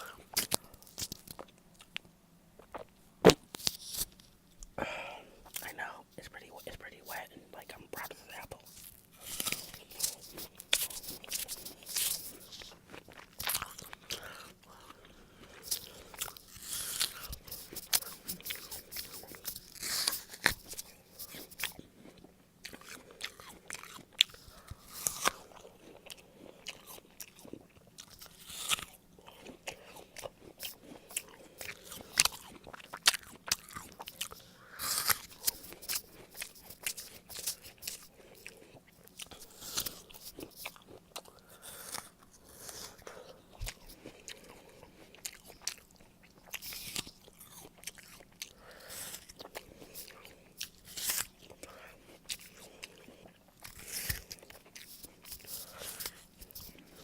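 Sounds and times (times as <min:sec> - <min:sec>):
apple crunching while chewing: 0:00.0 - 0:04.2, 0:07.1 - 0:57.0.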